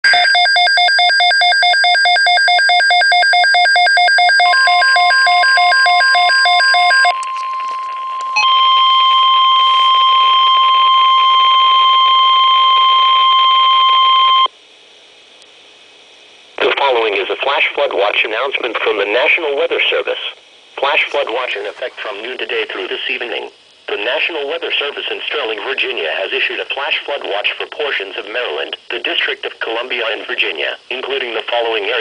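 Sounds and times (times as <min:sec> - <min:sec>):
rapid electronic alarm beeping: 0:00.1 - 0:14.5
steady warning alarm tone: 0:00.1 - 0:14.5
higher steady tone: 0:04.4 - 0:14.5
faint radio hiss: 0:09.0 - 0:32.0.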